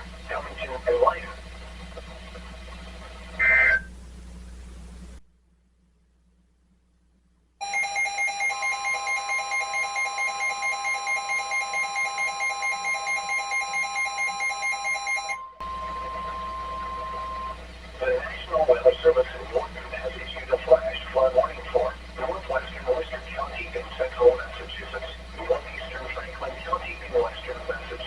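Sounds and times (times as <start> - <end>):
weather radio alarm beeps: 3.4 - 3.9, 7.6 - 21.9
steady warning alarm tone: 3.4 - 4.0, 7.6 - 28.0.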